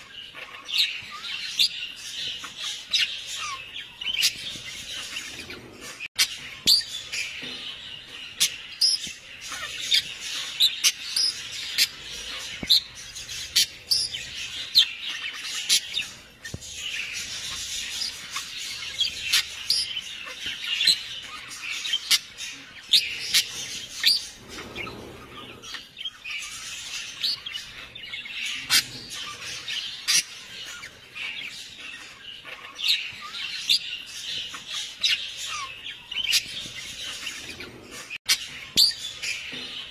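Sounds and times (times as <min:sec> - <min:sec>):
birds chirping: 0:00.0 - 0:39.9.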